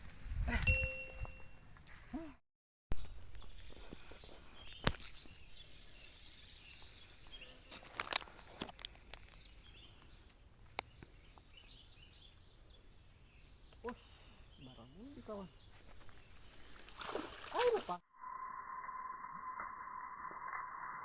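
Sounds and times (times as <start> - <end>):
insect drone: 3.0 - 21.0.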